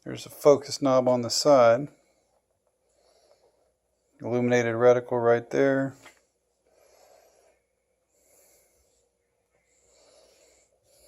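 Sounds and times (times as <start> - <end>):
soft breaths: 1.4 - 4.2, 5.9 - 11.0.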